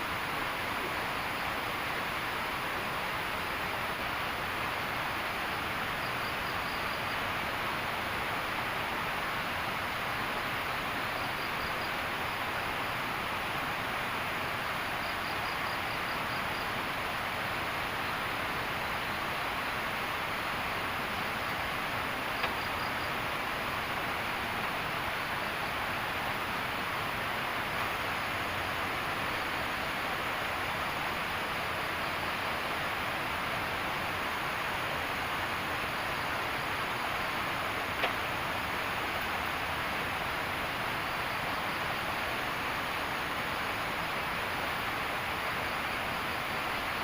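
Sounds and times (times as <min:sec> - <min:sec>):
insects trilling: 0:00.0 - 0:47.0
river rushing: 0:00.0 - 0:47.0.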